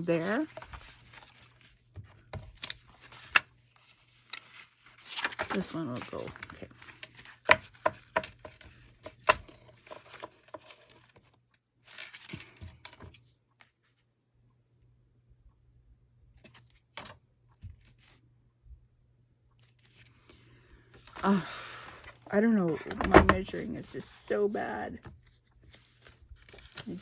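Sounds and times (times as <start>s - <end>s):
paper rustling: 0.0s - 14.0s, 21.0s - 27.0s.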